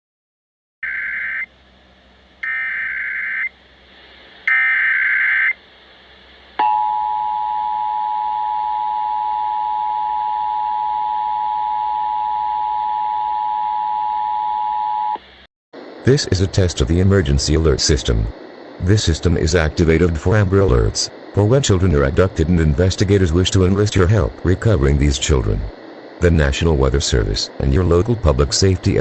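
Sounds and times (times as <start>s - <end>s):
digital header data bursts: 16.1s - 29.0s.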